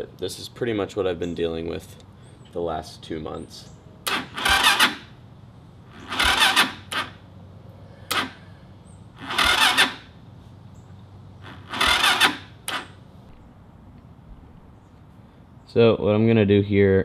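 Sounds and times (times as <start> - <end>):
electric starter cranking engine: 4.0 - 5.2, 5.9 - 7.2, 8.0 - 8.5, 9.1 - 10.2, 11.4 - 13.0.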